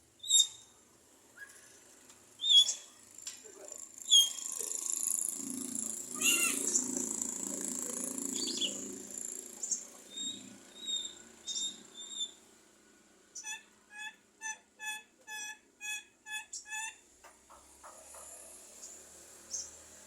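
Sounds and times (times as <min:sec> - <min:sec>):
myna whistles and squeaks: 0:00.2 - 0:00.7, 0:02.4 - 0:02.9, 0:04.1 - 0:04.5, 0:10.2 - 0:12.4
bird chattering: 0:02.4 - 0:02.9, 0:04.0 - 0:05.1, 0:06.1 - 0:12.4, 0:13.4 - 0:17.0.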